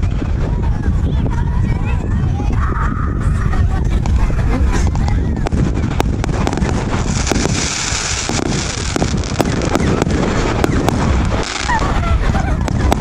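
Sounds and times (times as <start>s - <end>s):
fireworks cracking and banging: 0.0s - 1.3s, 3.4s - 13.0s
wind rumbling on microphone: 0.0s - 13.0s
dense crackling hiss: 3.4s - 13.0s.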